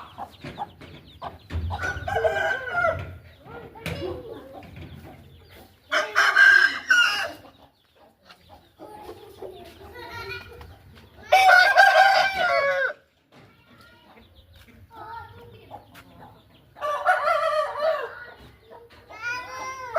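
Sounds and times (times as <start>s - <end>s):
rooster clucking: 0.0s - 13.0s
rooster crowing: 11.4s - 13.0s.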